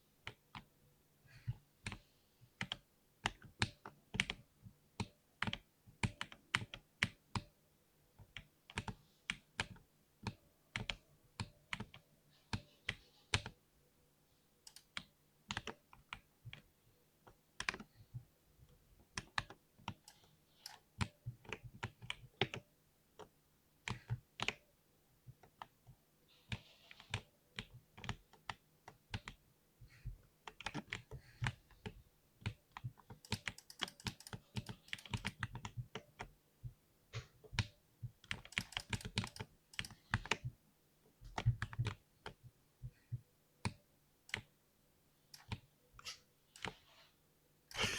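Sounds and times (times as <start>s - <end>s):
typing on mechanical keyboard: 2.6s - 7.5s, 8.2s - 13.6s, 14.7s - 16.7s, 17.6s - 18.0s, 26.5s - 29.4s, 30.4s - 36.4s, 37.5s - 40.5s, 45.3s - 46.8s.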